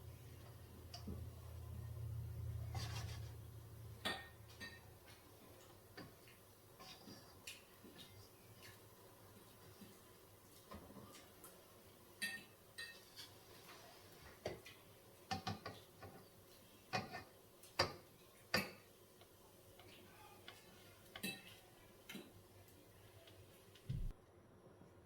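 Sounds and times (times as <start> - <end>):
short low thump: 23.9 - 24.1.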